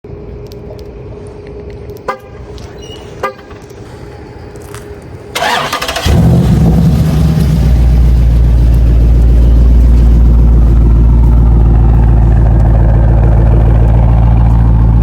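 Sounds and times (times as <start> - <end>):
car horn chirps: 2.0 - 3.6
car starter cranking: 5.4 - 6.7.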